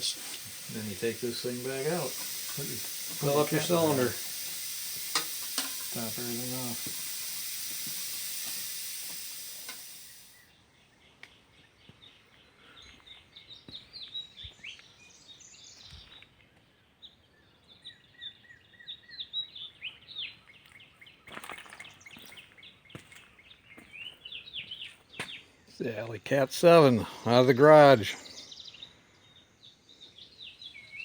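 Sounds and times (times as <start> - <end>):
hiss: 0.0 - 10.4
small birds chirping: 0.0 - 26.8, 28.0 - 31.0.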